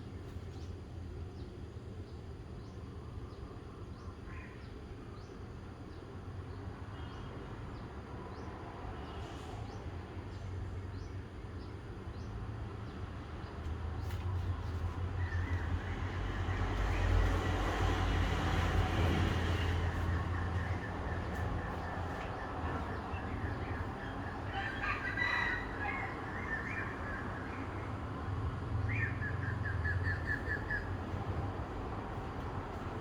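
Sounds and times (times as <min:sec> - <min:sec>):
vehicle passing by: 0:12.4 - 0:33.0.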